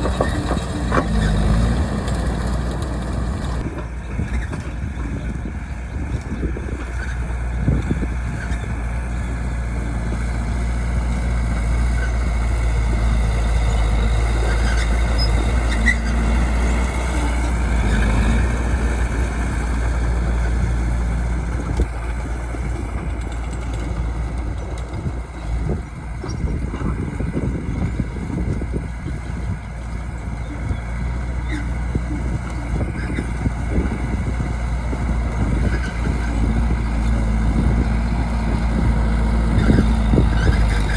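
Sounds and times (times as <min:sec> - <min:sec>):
bulldozer diesel engine droning: 0:00.0 - 0:40.9.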